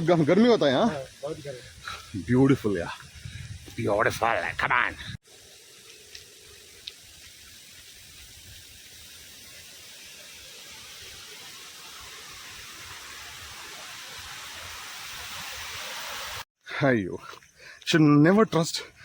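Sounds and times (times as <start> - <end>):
rushing water hiss: 0.0 - 16.5
faint ticks: 5.8 - 7.3.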